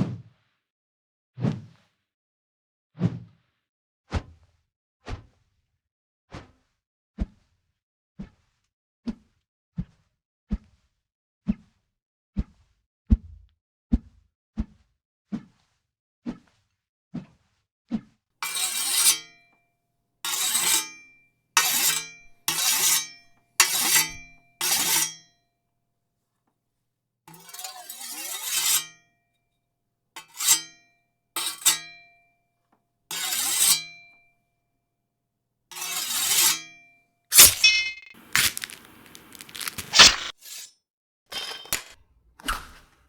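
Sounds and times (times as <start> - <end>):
sword blade strikes and clashes: 18.4 - 19.4, 20.3 - 25.3, 27.3 - 29.0, 30.2 - 30.8, 31.4 - 32.1, 33.1 - 34.1, 35.8 - 40.7, 41.3 - 42.0.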